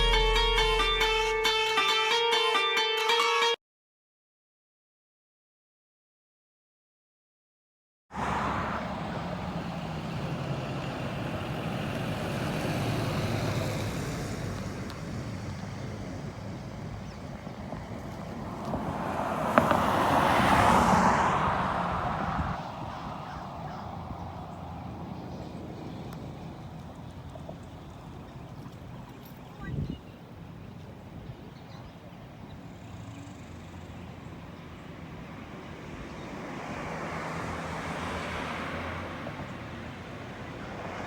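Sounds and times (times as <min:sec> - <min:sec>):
road traffic: 0:00.0 - 0:03.1, 0:08.1 - 0:41.0
vehicle passing by: 0:08.2 - 0:29.2, 0:32.8 - 0:41.0
wind on microphone: 0:21.4 - 0:24.8, 0:29.4 - 0:31.6.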